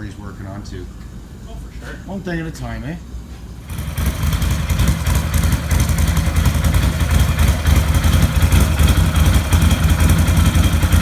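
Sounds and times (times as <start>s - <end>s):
atv engine idling: 3.7s - 11.0s.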